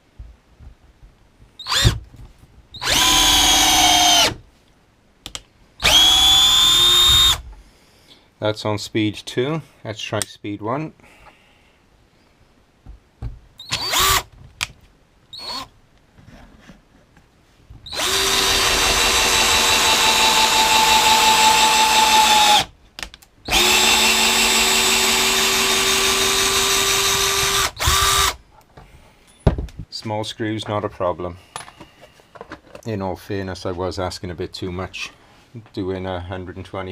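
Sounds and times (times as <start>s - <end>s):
cordless drill driving screw: 1.6s - 2.0s, 2.8s - 4.4s, 5.8s - 7.4s, 13.6s - 14.3s, 15.4s - 15.7s, 17.9s - 22.7s, 23.5s - 28.4s.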